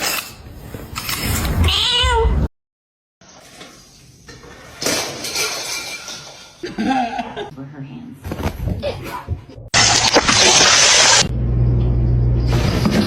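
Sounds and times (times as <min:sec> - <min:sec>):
clattering and rustling: 0:04.3 - 0:06.6.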